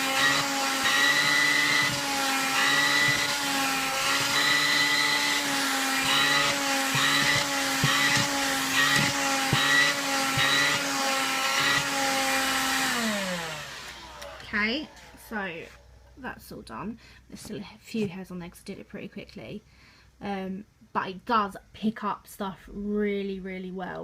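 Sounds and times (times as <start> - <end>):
handheld vacuum cleaner whining: 0.0 - 16.0.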